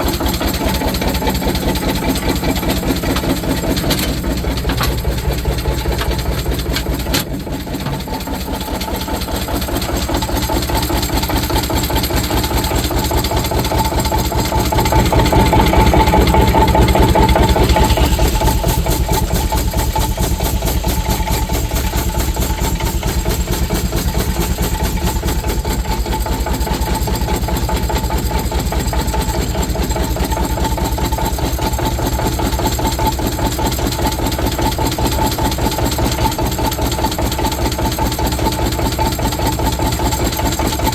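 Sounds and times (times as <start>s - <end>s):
steam engine rhythmic beat: 0.0s - 40.9s
steady mid-pitched tone: 13.8s - 25.5s.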